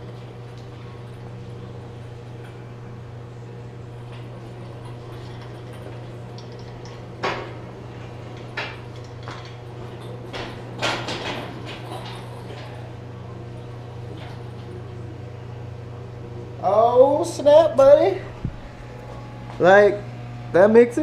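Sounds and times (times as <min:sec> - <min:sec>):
steady electrical hum: 0:00.0 - 0:21.0
metal parts knocking and clanking: 0:04.6 - 0:07.6, 0:08.3 - 0:12.9.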